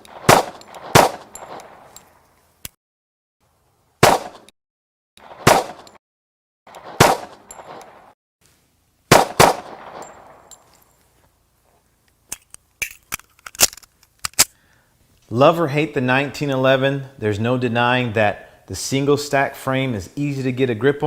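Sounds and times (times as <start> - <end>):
pistol shots ringing: 0.0 - 2.0, 4.0 - 4.4, 5.2 - 6.0, 6.8 - 8.1, 9.1 - 10.7.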